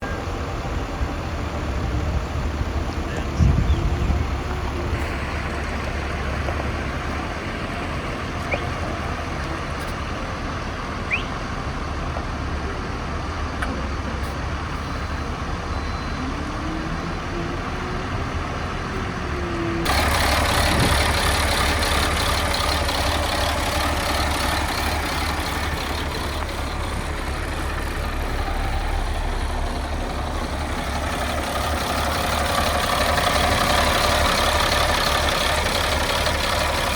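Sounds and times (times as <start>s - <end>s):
bus diesel engine idling: 0.0s - 36.9s.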